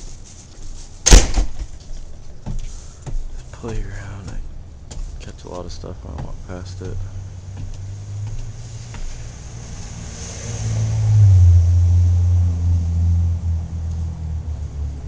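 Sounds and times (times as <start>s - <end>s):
low vehicle-like rumble: 1.0s - 15.0s.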